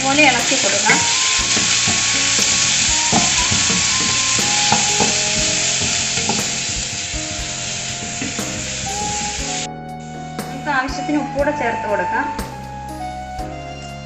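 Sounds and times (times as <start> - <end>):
food sizzling in hot oil: 0.0 - 9.7
spoon scraping and knocking pan: 0.2 - 9.6.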